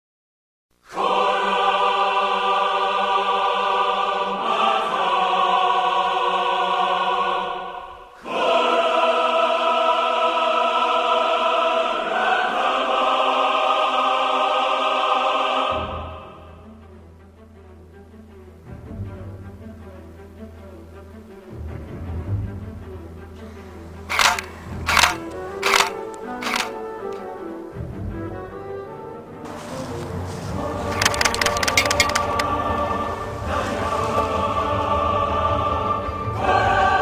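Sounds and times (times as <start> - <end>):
choir-like trailer music chords: 0.9 - 17.1, 30.5 - 37.0.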